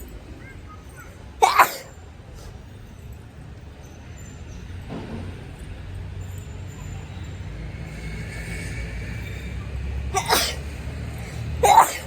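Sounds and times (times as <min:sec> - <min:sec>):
road traffic rumble: 0:00.0 - 0:12.0
person sneezing: 0:01.4 - 0:01.9, 0:10.2 - 0:10.6, 0:11.6 - 0:12.0.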